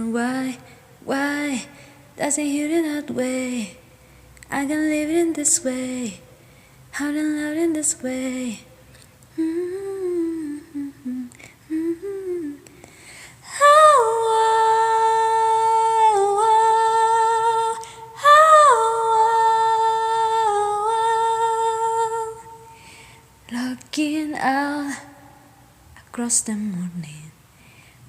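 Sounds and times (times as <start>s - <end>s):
person humming: 9.4s - 12.8s.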